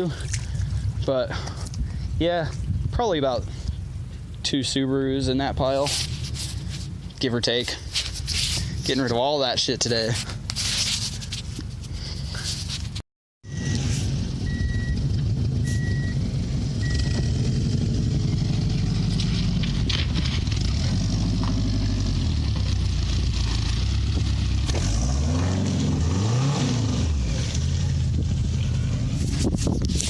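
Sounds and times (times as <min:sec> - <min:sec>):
car engine revving: 0:13.5 - 0:29.4
high electronic chime beeps: 0:16.8 - 0:17.4.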